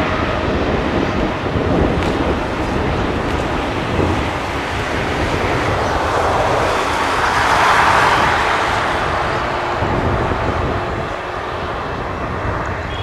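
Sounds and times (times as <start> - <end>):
jet engines roaring past: 0.0 - 13.0.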